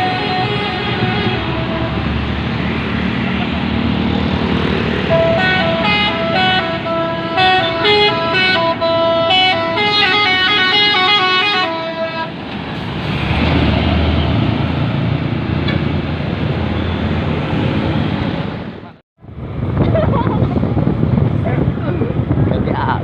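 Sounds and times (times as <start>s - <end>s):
truck horn playing melody: 0.0s - 2.2s, 5.1s - 12.4s
truck engine and road noise: 0.0s - 23.0s.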